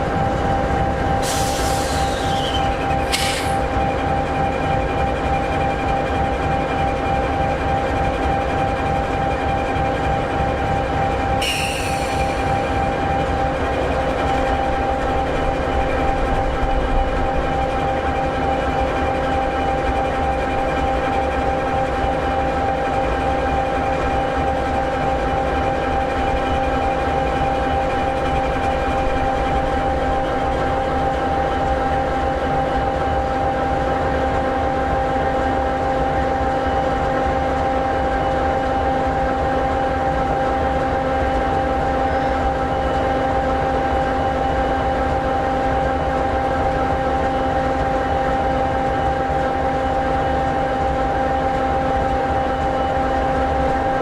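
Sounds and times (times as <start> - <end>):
diesel locomotive idling: 0.0 - 20.8.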